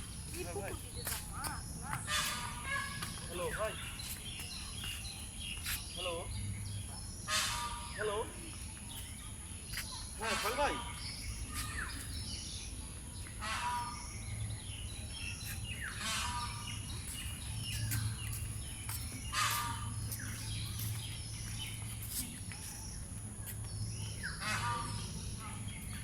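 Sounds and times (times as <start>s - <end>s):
peacock calling: 0.0s - 4.0s, 7.2s - 8.6s, 10.0s - 12.1s, 13.4s - 14.4s, 15.8s - 17.1s, 19.2s - 20.7s, 24.2s - 26.0s.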